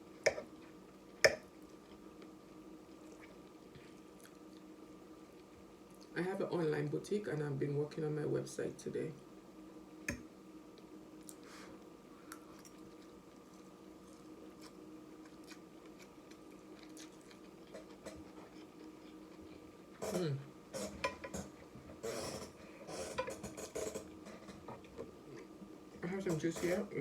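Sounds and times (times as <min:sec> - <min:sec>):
faint steady hum: 0:00.0 - 0:27.0
eating noises: 0:12.2 - 0:20.2.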